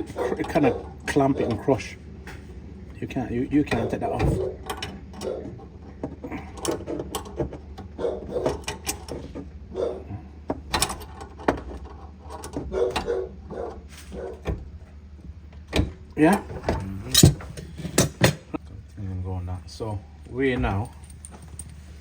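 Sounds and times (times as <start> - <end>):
tools clinking on metal pipe: 17.1 - 18.4.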